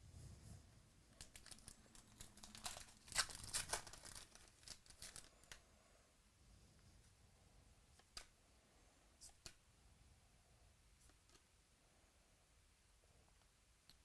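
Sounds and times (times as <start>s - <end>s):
plastic wrapping crinkling: 1.2s - 5.6s.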